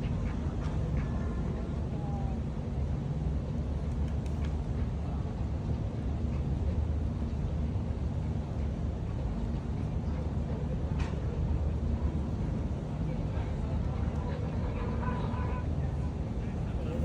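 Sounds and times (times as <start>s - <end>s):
boat engines rumbling: 12.6s - 17.0s.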